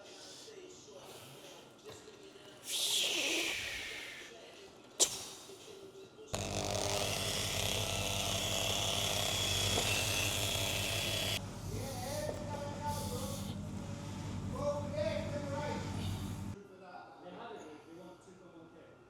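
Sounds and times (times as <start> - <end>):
vehicle lift hiss: 12.0 - 13.6.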